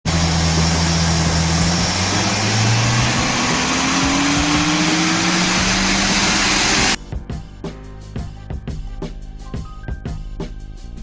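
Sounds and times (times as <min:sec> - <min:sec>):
car engine revving up: 0:00.1 - 0:07.0
loud rushing noise: 0:00.1 - 0:07.0.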